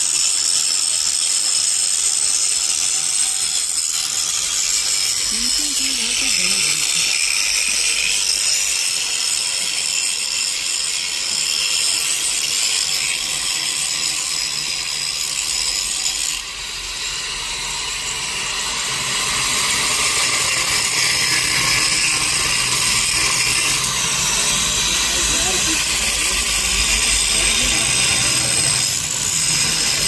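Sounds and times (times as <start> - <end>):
arc welding crackling hiss: 0.0 - 16.3.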